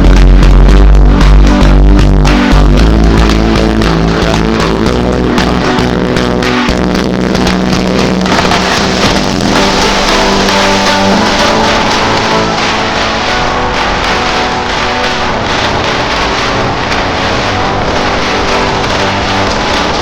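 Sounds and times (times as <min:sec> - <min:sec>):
background music with held notes: 0:00.0 - 0:20.0
car running on the road: 0:00.0 - 0:20.0.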